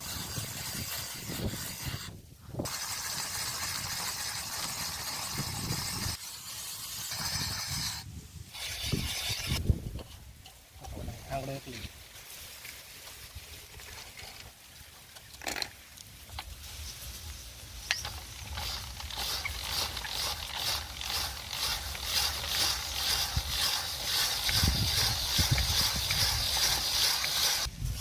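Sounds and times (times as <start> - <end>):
ice shaving scraping hiss: 0.0 - 9.6, 16.4 - 28.0.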